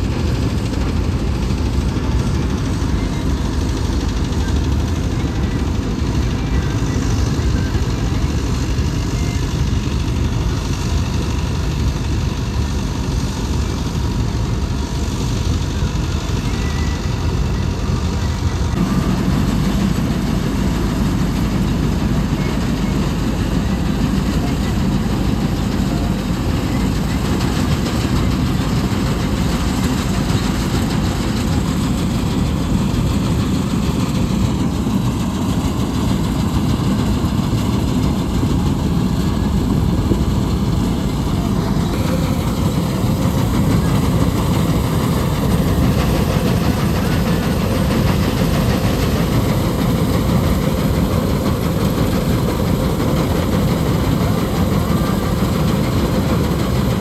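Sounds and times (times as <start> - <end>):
combine harvester engine running: 0.0 - 57.0.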